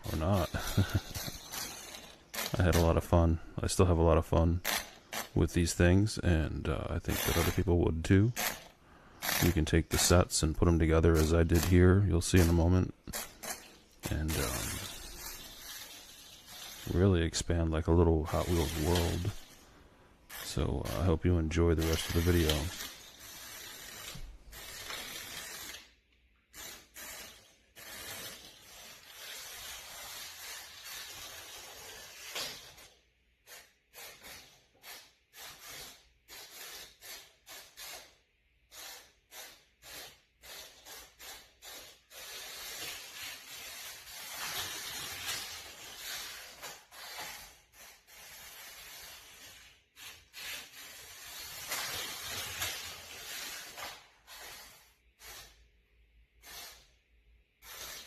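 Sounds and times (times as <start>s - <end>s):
toy car motor whirring: 0.0s - 2.9s, 4.6s - 5.3s, 7.1s - 7.6s, 8.3s - 10.2s, 11.1s - 17.1s, 20.3s - 21.1s, 21.8s - 58.0s.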